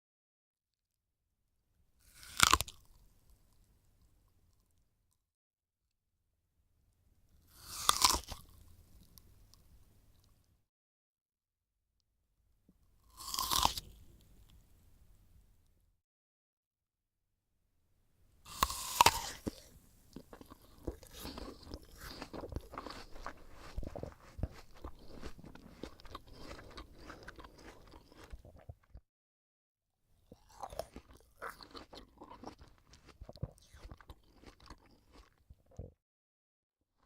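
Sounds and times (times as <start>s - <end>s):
biting into crisp apple: 2.1s - 2.8s, 7.5s - 8.6s, 13.1s - 14.0s, 18.5s - 29.0s, 30.3s - 35.4s
wet chewing crunches: 7.6s - 8.6s, 18.5s - 29.0s, 30.3s - 35.9s.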